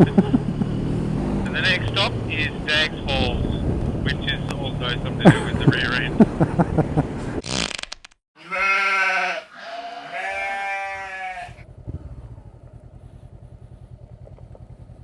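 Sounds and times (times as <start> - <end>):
sheep-like bleats: 8.4 - 11.6
motorcycle engine at low revs: 11.6 - 15.0.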